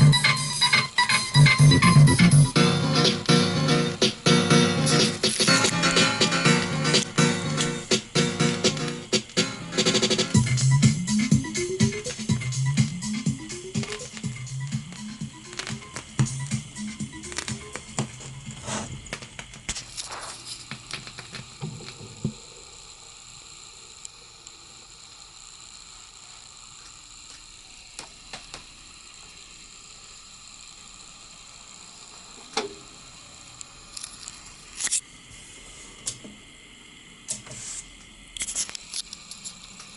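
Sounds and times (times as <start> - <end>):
steady low hiss: 0.0 - 39.9
turntable mechanical clicks: 4.8 - 20.0.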